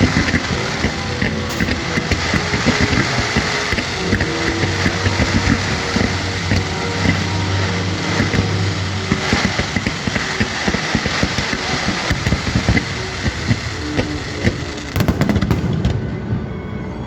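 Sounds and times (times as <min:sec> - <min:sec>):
low steady hum: 0:00.0 - 0:15.0
fireworks crackling: 0:00.0 - 0:17.0.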